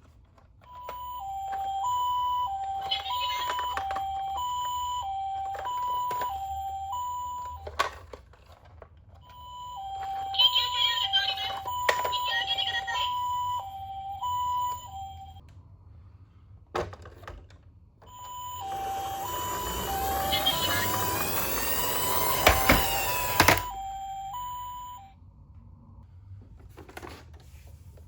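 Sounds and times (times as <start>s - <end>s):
toy siren two-tone beeps: 0.7s - 8.0s, 9.2s - 15.4s, 18.1s - 25.1s
harsh noise over tones: 18.4s - 24.8s.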